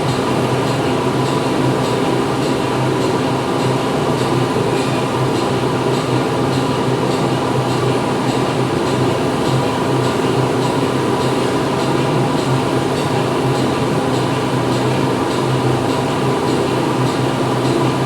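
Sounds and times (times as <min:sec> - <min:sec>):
factory machinery humming: 0:00.0 - 0:18.0.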